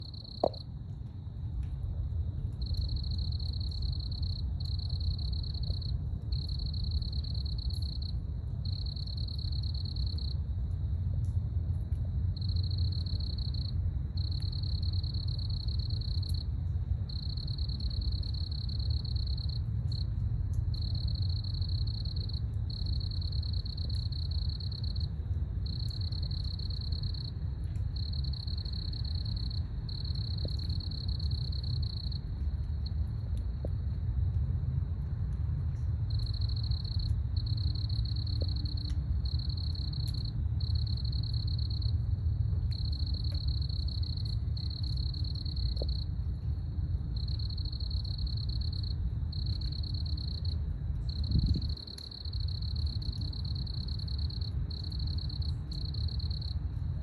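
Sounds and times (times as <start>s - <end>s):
night insects trilling: 0.0s - 0.7s, 2.6s - 10.4s, 12.3s - 20.1s, 20.7s - 33.6s, 36.1s - 46.2s, 47.1s - 56.7s
low rumble: 50.5s - 53.4s.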